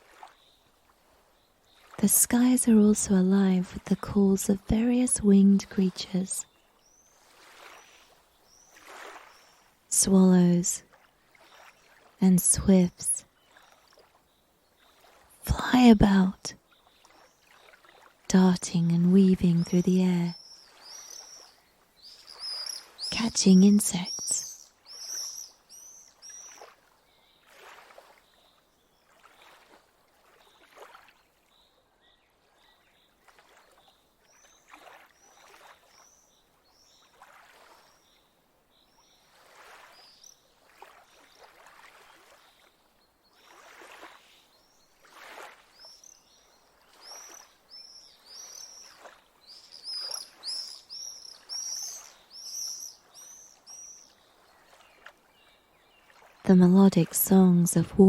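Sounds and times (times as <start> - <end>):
soft water swishes: 0.0 - 57.9
small birds chirping: 12.4 - 27.6, 42.2 - 58.0.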